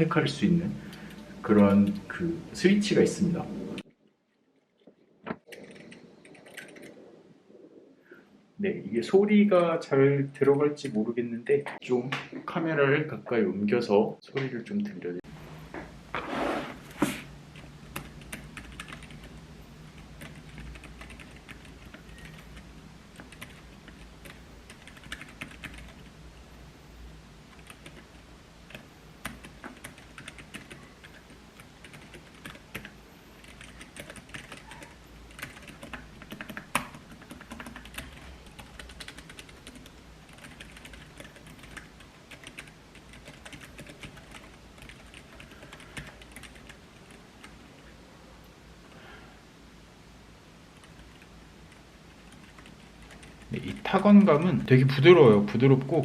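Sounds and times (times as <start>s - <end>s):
mechanical keyboard typing: 5.5s - 7.0s, 17.6s - 26.1s, 27.6s - 28.1s, 28.7s - 47.6s, 50.8s - 54.5s.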